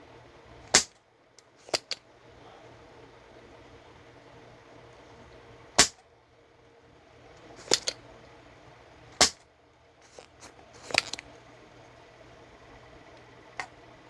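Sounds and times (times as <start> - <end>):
low electrical hum: 0.0 - 14.0
hand tools snapping clicks: 1.6 - 2.0, 7.6 - 8.0, 10.0 - 11.3.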